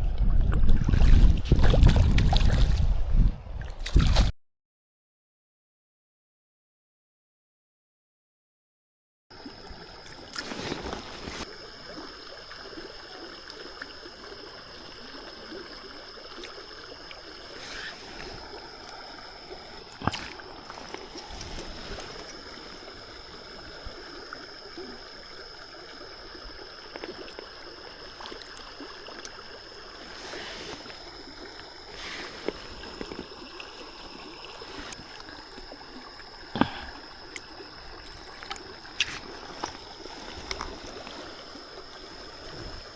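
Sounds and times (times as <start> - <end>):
river water running: 0.7 - 4.3, 9.3 - 42.9.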